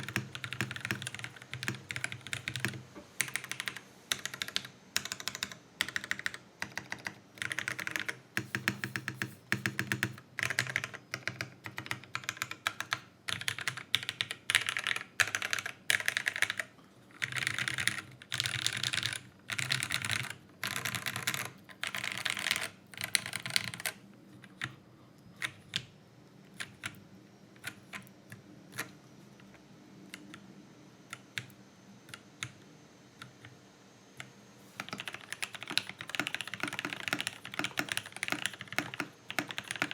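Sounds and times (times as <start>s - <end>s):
mechanical keyboard typing: 0.0s - 24.8s, 25.4s - 25.9s, 26.5s - 27.0s, 34.2s - 39.9s.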